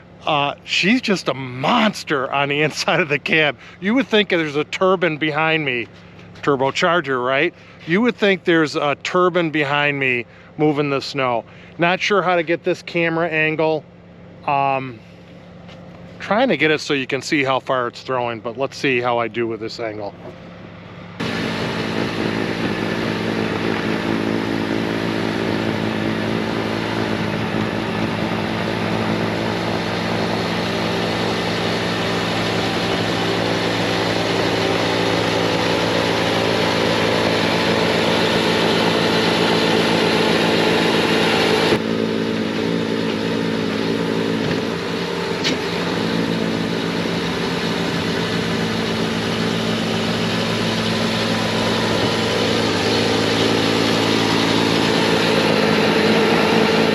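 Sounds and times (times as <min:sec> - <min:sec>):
snowblower through heavy snow: 0:00.0 - 0:06.5, 0:07.5 - 0:08.4, 0:20.4 - 0:56.9
diesel engine at full throttle: 0:00.0 - 0:56.9.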